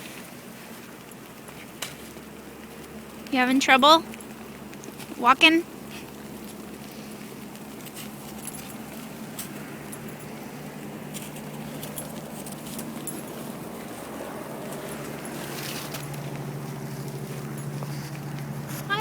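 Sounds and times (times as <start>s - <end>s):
freezing rain falling: 0.0s - 12.4s.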